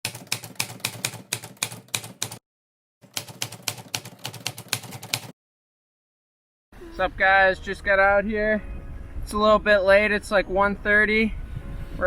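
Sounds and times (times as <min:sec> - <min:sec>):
typewriter key clacks: 0:00.0 - 0:02.4, 0:03.2 - 0:05.3.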